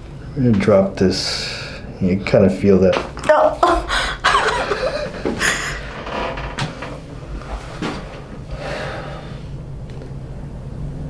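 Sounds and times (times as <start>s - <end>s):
knocks and rustles: 5.2s - 8.4s.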